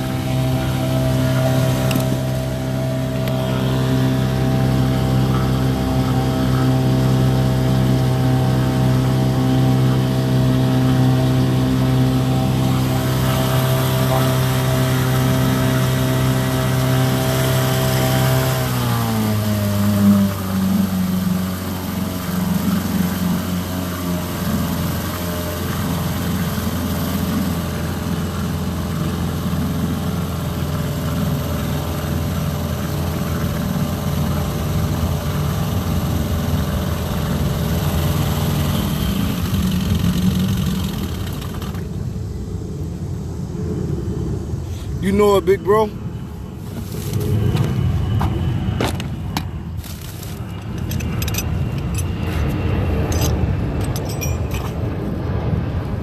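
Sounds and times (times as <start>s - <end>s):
boat motor running: 0.0s - 42.2s.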